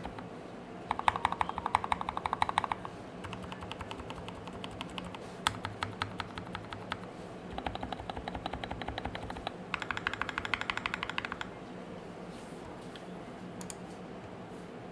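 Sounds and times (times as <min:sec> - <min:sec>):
mechanical keyboard key presses: 0:00.9 - 0:11.5.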